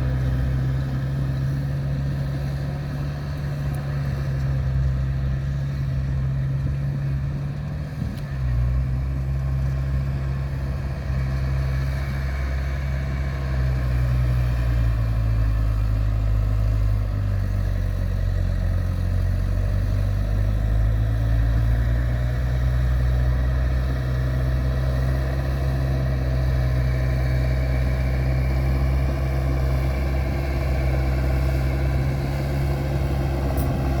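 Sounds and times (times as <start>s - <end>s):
vehicle engine running: 0.0s - 34.0s.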